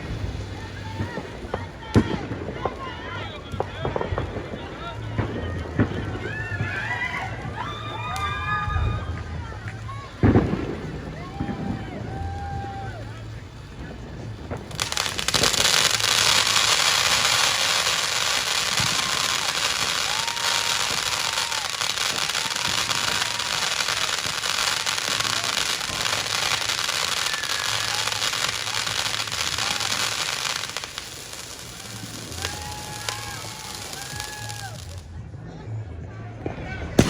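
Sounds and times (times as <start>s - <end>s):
fireworks crackling: 0.0s - 35.4s.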